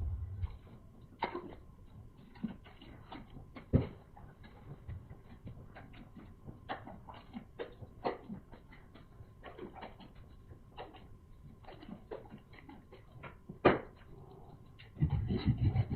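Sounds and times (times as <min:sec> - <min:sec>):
louder thump: 0:00.0 - 0:00.6
chewing with wet mouth clicks: 0:04.3 - 0:13.4.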